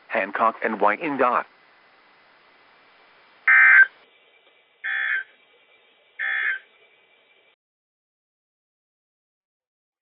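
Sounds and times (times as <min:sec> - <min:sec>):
digital data tone bursts: 0:03.5 - 0:04.0.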